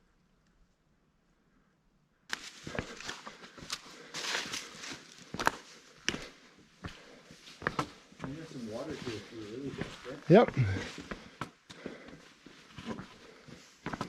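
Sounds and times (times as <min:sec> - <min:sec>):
footsteps crunching dry leaves: 0:02.3 - 0:05.8.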